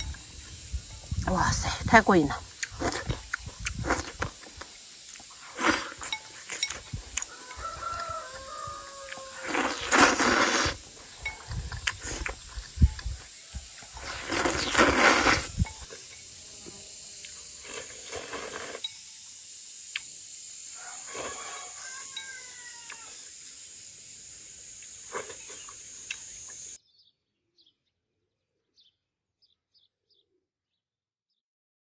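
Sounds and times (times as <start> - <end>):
steady high hiss: 0.0 - 26.8
birds chirping: 4.6 - 10.0, 18.9 - 28.0.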